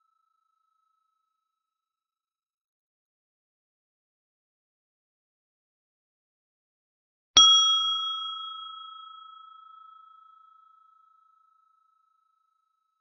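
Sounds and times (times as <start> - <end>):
small brass bell ringing: 7.4 - 11.4.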